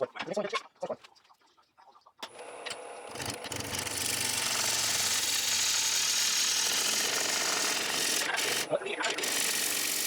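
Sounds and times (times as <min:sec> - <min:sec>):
wood lathe whirring: 0:03.1 - 0:10.0.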